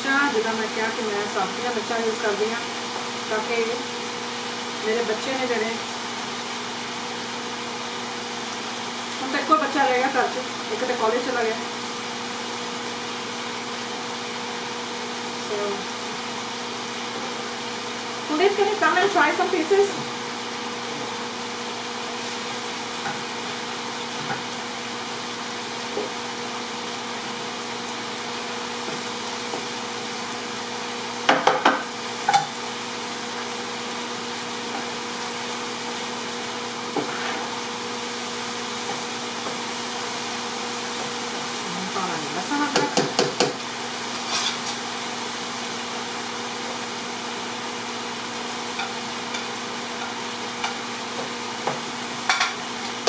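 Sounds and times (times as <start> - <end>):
chicken sizzling in a pan: 0.0 - 53.0
utensil knocking against pan: 31.3 - 32.5, 42.7 - 43.6.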